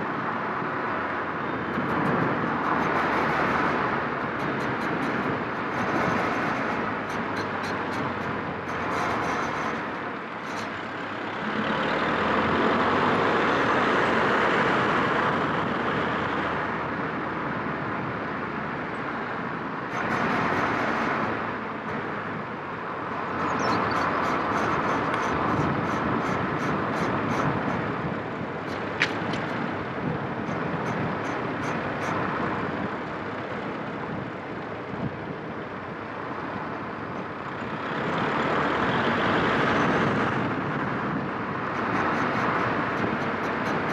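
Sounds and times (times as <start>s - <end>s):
road and tyre noise: 0.0s - 43.9s
high ticking from a wheel: 1.7s - 11.5s, 23.0s - 33.8s, 41.6s - 43.9s.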